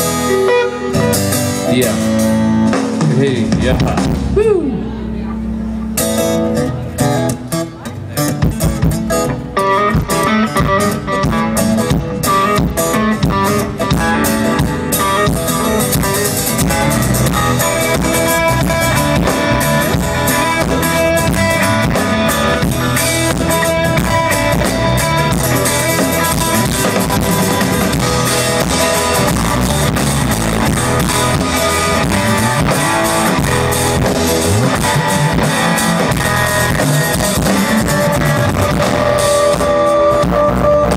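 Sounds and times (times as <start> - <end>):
guitar: 0.0 - 40.9
live band playing: 0.0 - 40.9
drum hits: 2.7 - 4.5.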